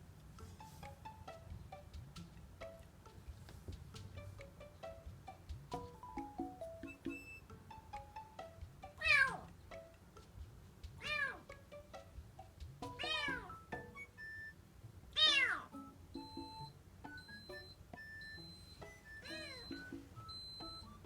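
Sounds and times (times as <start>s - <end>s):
kitten meowing: 9.0s - 9.5s, 11.0s - 11.4s, 13.0s - 13.6s, 15.2s - 15.7s, 19.2s - 19.9s.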